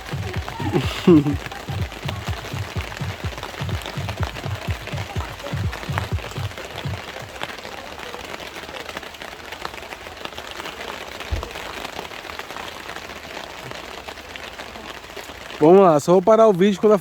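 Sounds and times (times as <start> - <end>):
low rhythmic thuds: 0.0 - 7.4
heavy rain falling: 0.0 - 17.0.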